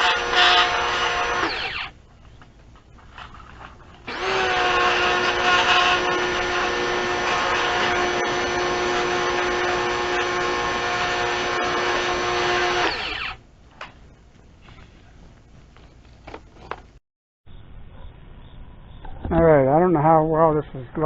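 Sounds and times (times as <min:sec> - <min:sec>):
power tool motor running: 0:00.0 - 0:01.9, 0:04.1 - 0:13.4.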